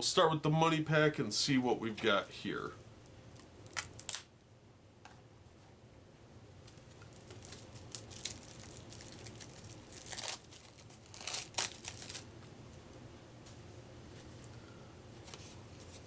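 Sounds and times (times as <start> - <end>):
plastic wrapping crinkling and tearing: 3.6 - 4.3, 6.6 - 12.3.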